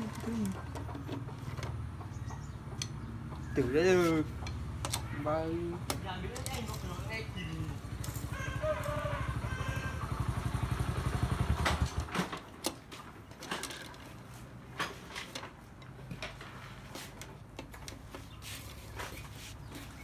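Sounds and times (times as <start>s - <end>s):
scattered clicks and knocks: 0.0s - 3.6s, 4.2s - 7.0s
small motorcycle engine idling: 0.0s - 12.6s.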